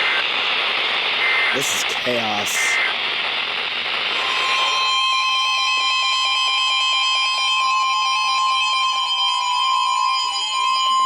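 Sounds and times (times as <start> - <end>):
radio static: 1.6 - 2.8.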